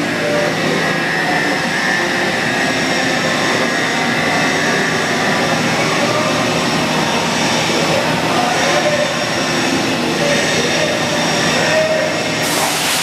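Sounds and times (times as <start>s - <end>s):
machine hiss: 12.4s - 13.0s.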